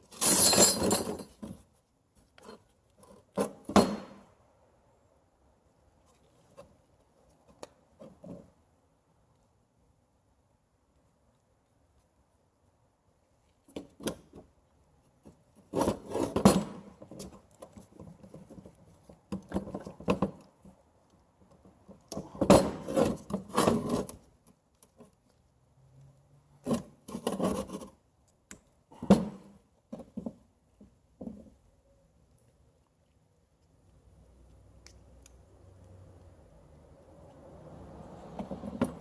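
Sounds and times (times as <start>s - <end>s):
metal parts scraping and clinking: 0.0s - 1.4s.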